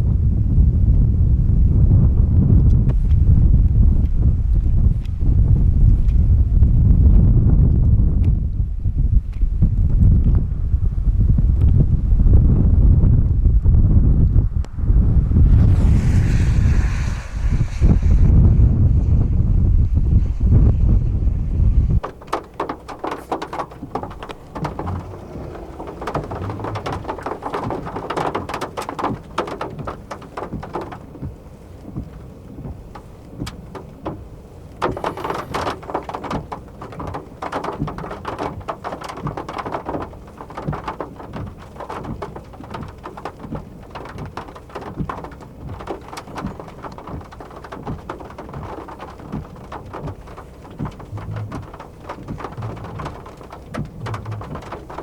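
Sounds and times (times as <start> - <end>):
low thunder rumble: 0.0 - 38.1, 43.4 - 55.0
heavy rain on hard surface: 9.7 - 55.0.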